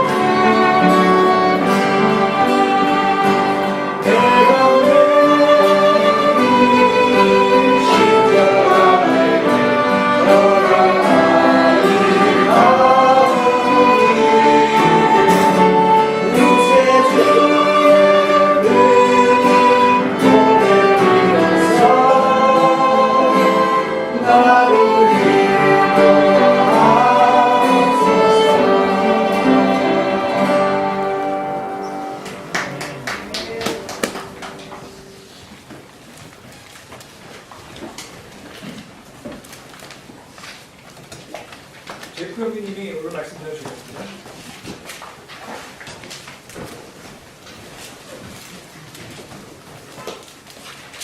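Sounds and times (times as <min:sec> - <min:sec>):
person singing: 0:00.0 - 0:32.3
instrumental accompaniment: 0:00.0 - 0:35.4.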